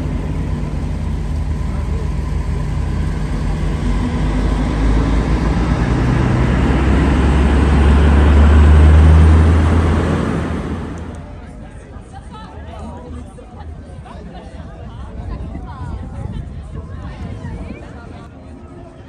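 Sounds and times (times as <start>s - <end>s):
vehicle engine drone: 0.0s - 12.0s.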